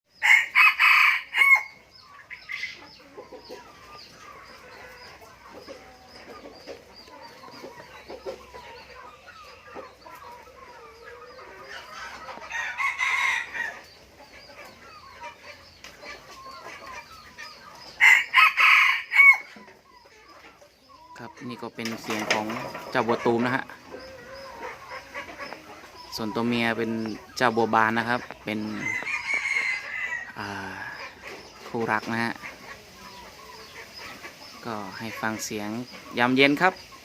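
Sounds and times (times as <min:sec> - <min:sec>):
rooster crowing: 0:00.2 - 0:01.8, 0:12.4 - 0:13.8, 0:18.0 - 0:19.6, 0:28.6 - 0:30.6.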